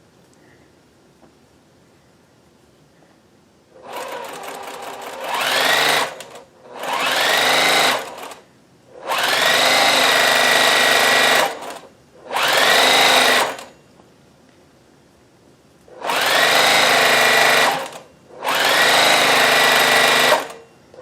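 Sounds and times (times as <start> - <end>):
sewing machine stitching: 3.8 - 8.4, 9.0 - 13.7, 15.9 - 20.6.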